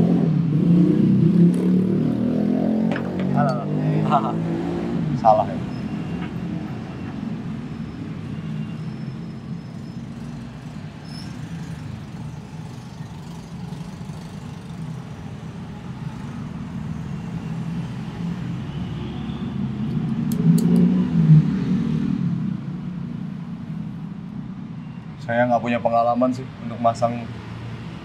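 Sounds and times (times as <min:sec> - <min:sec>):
motor vehicle rumble: 0:00.8 - 0:08.2.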